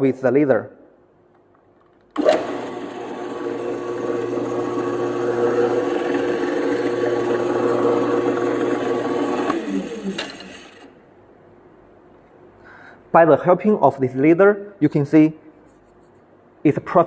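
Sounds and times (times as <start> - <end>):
drill press humming: 2.1 - 11.0.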